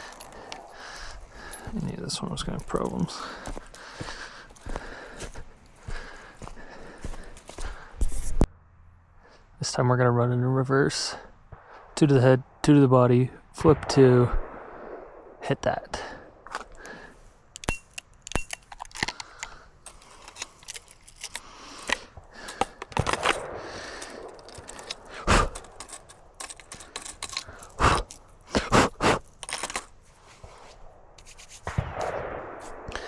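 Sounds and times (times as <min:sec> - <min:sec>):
sharp revolver clacks: 0:17.6 - 0:19.6
revolver metallic clicks: 0:17.6 - 0:28.6.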